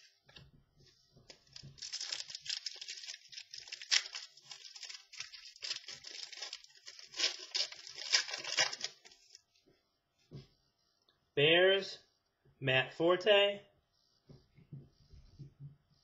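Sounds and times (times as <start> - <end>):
plastic packaging crinkling: 1.3 - 9.4.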